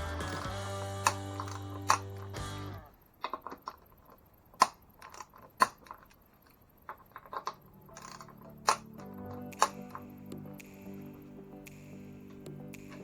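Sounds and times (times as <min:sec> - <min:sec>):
background music: 0:00.0 - 0:02.9, 0:07.7 - 0:13.0
clicks and knocks of tools: 0:01.0 - 0:02.4, 0:03.2 - 0:10.1.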